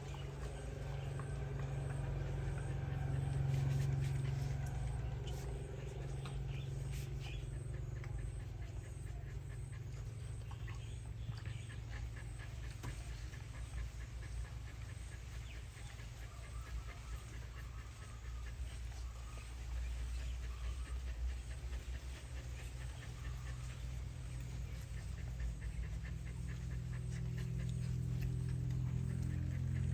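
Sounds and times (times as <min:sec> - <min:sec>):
puppy breathing: 0:00.0 - 0:29.9
steady low hum: 0:00.0 - 0:29.9.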